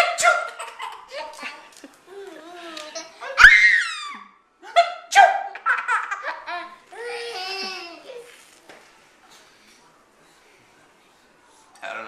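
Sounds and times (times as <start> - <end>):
toddler belly laughing: 5.6 - 8.3.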